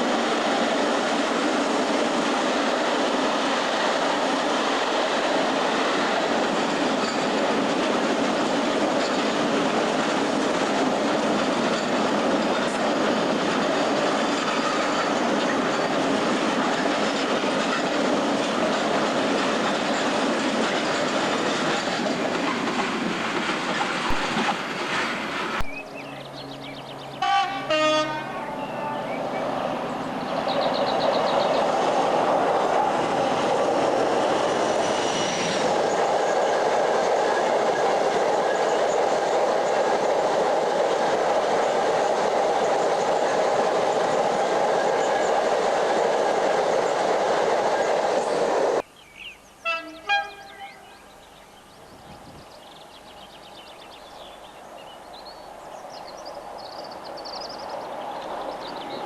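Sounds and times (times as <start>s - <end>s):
freight train rumbling past: 0.0s - 59.0s
locomotive horn: 27.2s - 29.0s, 49.6s - 51.0s.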